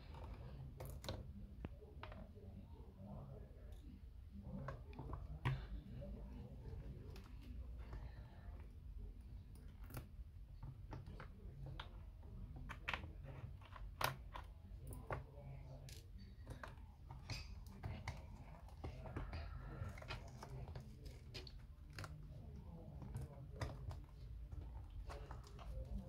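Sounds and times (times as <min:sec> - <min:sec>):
small tools clicking and tapping: 0:09.5 - 0:22.2.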